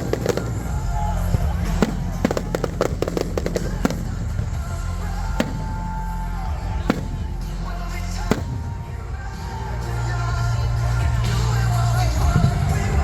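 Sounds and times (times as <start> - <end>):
fireworks bangs: 0.0 - 10.2
loud music with heavy bass: 0.0 - 13.0.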